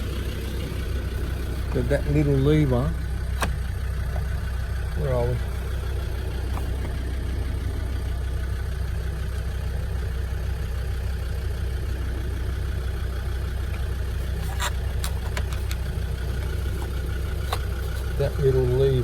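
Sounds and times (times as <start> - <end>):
vehicle engine idling: 0.0 - 19.0
seatbelt adjuster clicks: 3.3 - 4.3, 14.4 - 18.0.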